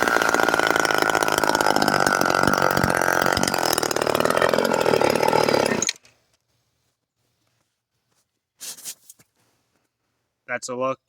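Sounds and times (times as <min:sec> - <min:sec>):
chainsaw engine running hard: 0:00.0 - 0:06.0.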